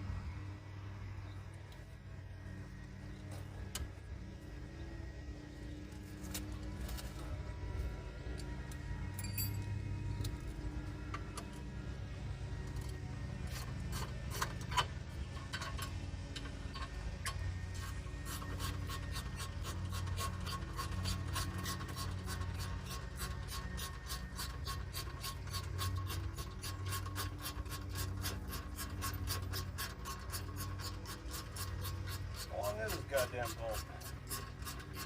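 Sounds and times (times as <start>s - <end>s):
low hum: 0.0s - 35.0s.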